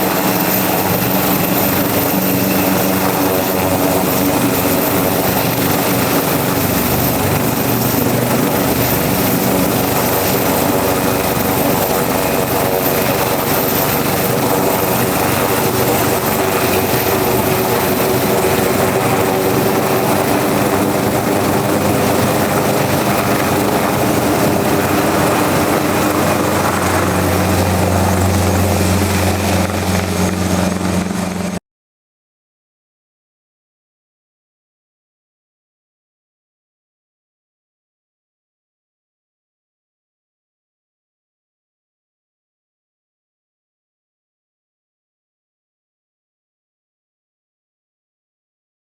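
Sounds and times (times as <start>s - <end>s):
helicopter turbine and rotors: 0.0s - 31.6s.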